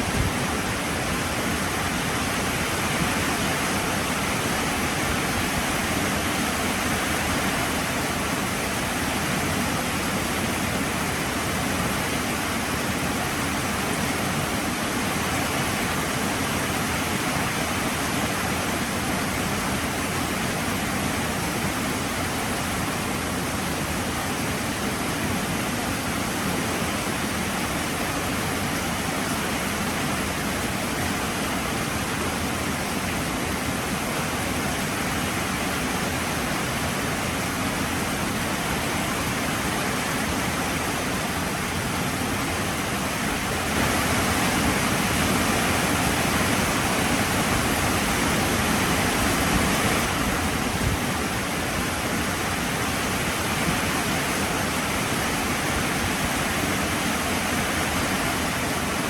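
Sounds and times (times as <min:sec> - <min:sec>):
heavy rain pouring: 0:30.3 - 0:59.0.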